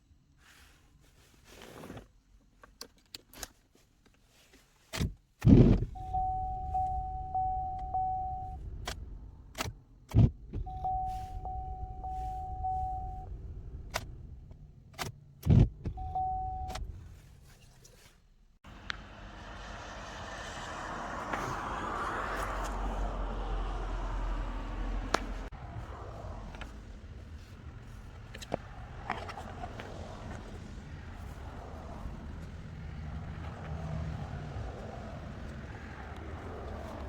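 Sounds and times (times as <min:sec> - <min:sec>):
low steady rumble: 0:05.7 - 0:20.4, 0:22.8 - 0:37.0.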